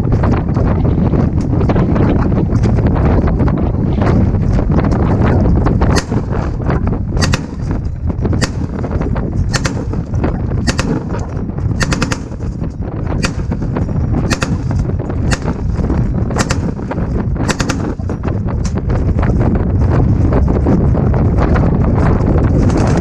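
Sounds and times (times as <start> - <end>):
steady low rumble: 0.0 - 23.0
machine gun firing bursts: 7.2 - 18.2.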